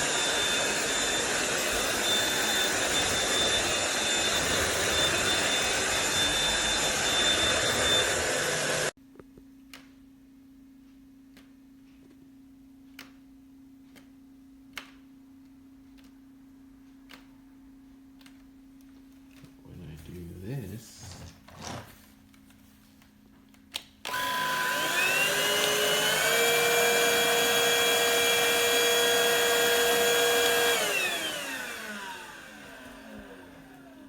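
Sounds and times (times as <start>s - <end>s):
stick vacuum whining: 0.0s - 8.9s, 24.0s - 34.0s.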